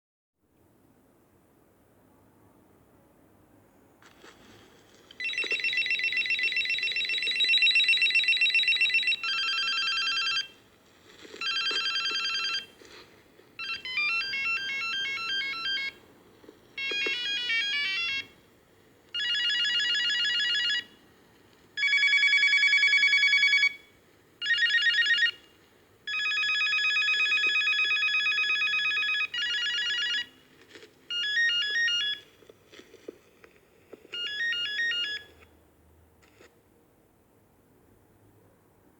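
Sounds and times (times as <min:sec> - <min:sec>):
phone ringtone melodies: 0:05.2 - 0:10.6, 0:11.4 - 0:12.7, 0:13.6 - 0:16.0, 0:16.8 - 0:18.4, 0:19.2 - 0:21.0, 0:21.8 - 0:25.4, 0:26.1 - 0:30.4, 0:31.1 - 0:32.3, 0:34.2 - 0:35.3.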